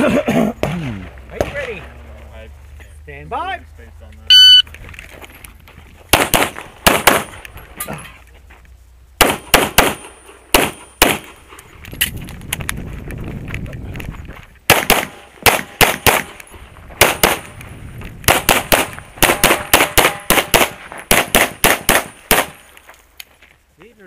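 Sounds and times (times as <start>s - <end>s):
pistol gunshots: 6.1s - 7.4s, 9.2s - 11.4s, 14.7s - 17.6s, 18.2s - 22.7s.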